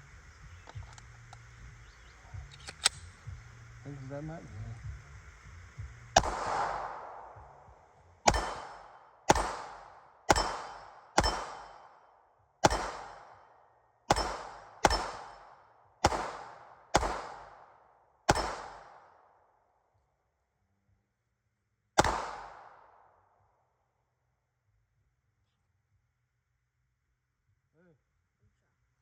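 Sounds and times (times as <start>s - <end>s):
pistol shots: 6.2s - 12.0s, 12.6s - 19.3s, 22.0s - 23.1s.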